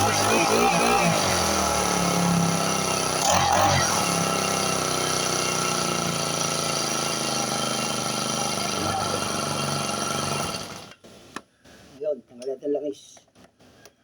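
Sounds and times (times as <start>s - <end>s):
small four-stroke engine running: 0.0s - 11.0s.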